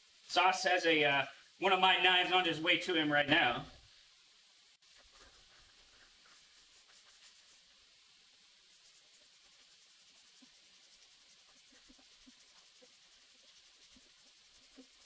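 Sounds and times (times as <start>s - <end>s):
hand sanding strokes: 4.8s - 7.8s, 8.6s - 15.0s.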